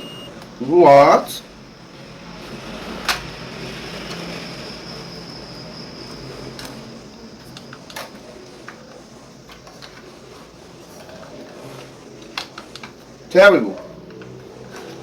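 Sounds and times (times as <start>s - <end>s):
faint high whine: 0.0s - 2.8s, 3.5s - 9.6s.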